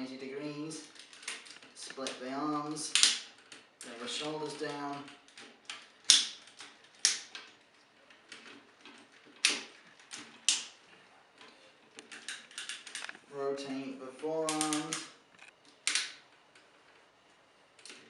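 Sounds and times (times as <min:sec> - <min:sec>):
plastic toy parts clicking: 0:00.8 - 0:02.2, 0:11.4 - 0:13.2, 0:14.4 - 0:16.6.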